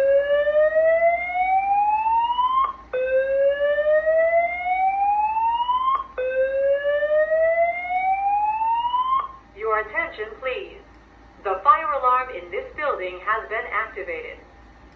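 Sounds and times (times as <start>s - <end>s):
fire alarm whoop tone: 0.0s - 9.4s.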